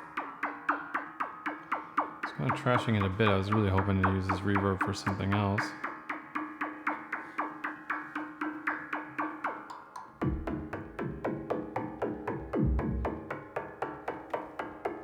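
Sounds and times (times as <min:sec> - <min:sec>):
synthesizer percussion hits: 0:00.0 - 0:15.0
deep synth bass: 0:10.2 - 0:11.3, 0:12.6 - 0:13.2.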